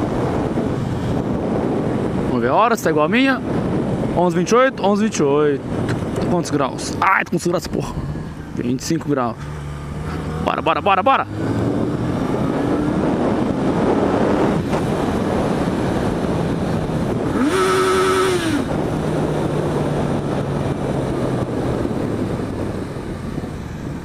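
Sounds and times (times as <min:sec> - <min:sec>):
wind noise: 0:00.0 - 0:24.0
motorcycle engine revving: 0:08.1 - 0:24.0.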